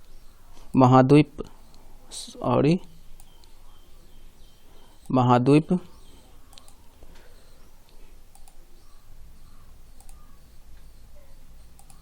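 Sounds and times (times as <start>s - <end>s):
low background hum: 0.0s - 12.0s
faint clicks: 6.5s - 7.3s, 7.9s - 8.6s, 10.0s - 10.9s, 11.7s - 12.0s.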